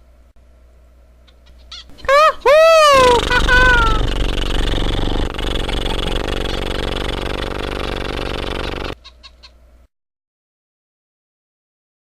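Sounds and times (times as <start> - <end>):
engine running: 1.9 - 9.0.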